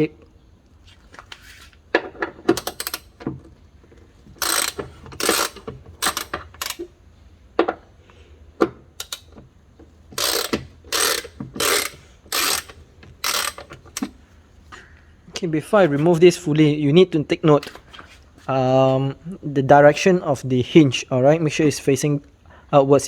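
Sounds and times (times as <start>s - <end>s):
ratchet wrench clicking: 2.6s - 3.2s, 4.4s - 6.9s, 9.0s - 9.4s, 10.2s - 14.2s.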